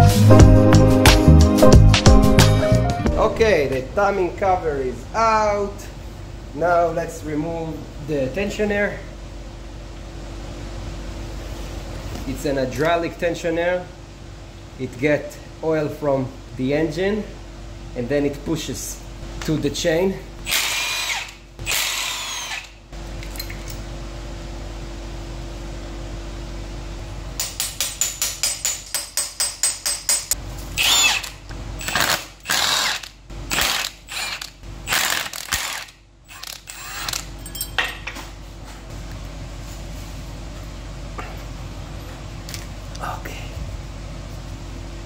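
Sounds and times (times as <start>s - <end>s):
power tool bursts: 20.4s - 22.8s, 30.8s - 37.3s
ratchet wrench clicking: 28.4s - 37.7s.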